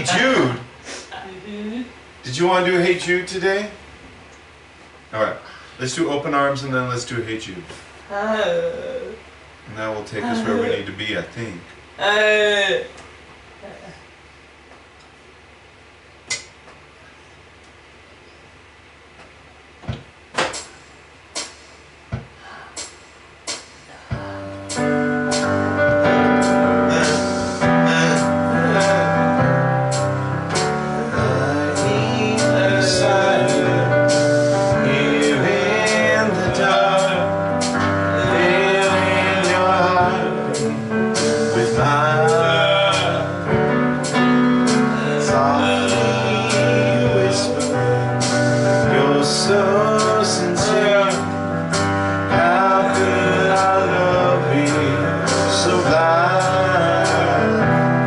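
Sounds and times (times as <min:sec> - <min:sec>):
percussion beat: 0:21.4 - 0:29.0
man singing with band: 0:31.1 - 0:37.3, 0:38.2 - 0:43.4, 0:44.9 - 0:48.0, 0:48.9 - 0:51.3, 0:52.3 - 0:57.7.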